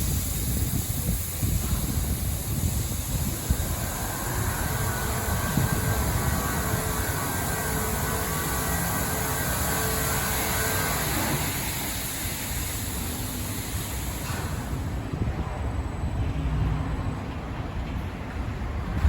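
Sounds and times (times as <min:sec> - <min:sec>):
water spraying hiss: 0:00.0 - 0:15.0
car wash machine noise: 0:00.0 - 0:16.0
faint motor whine: 0:00.0 - 0:17.9.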